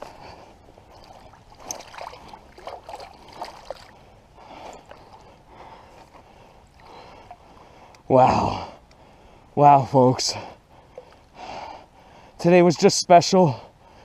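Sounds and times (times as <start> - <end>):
flowing creek water: 0.0 - 8.2
small splashes and knocks: 0.8 - 4.0, 4.6 - 7.5.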